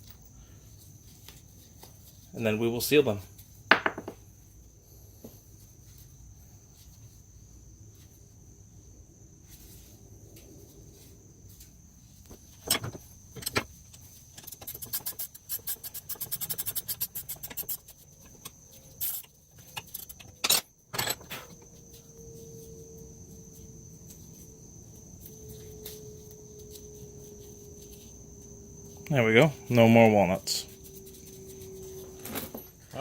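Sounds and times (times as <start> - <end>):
steady low hum: 4.2 - 33.0
metal nuts and bolts clinking: 12.6 - 21.6
rapid rattling ticks: 13.3 - 20.4
steady high whine: 21.2 - 33.0.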